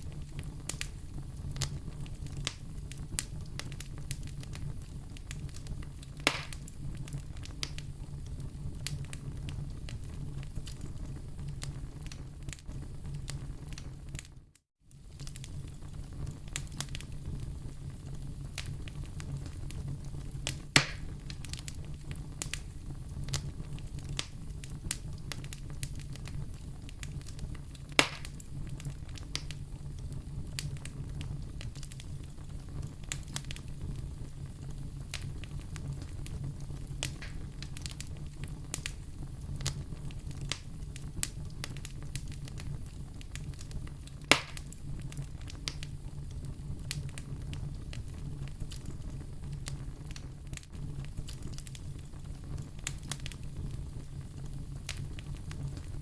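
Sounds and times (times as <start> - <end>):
fireplace fire crackling: 0.0 - 56.0
loud sharp snaps: 6.3 - 6.6, 20.8 - 21.1, 28.0 - 28.4, 44.3 - 44.7.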